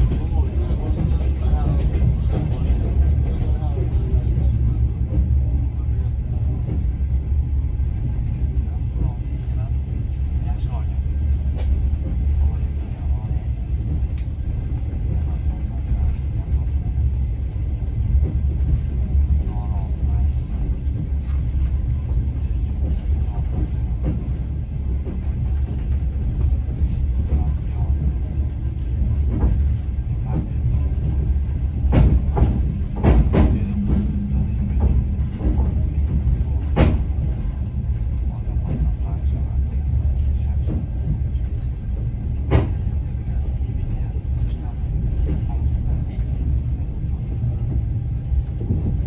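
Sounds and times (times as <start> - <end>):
train rumbling inside carriage: 0.0 - 49.0.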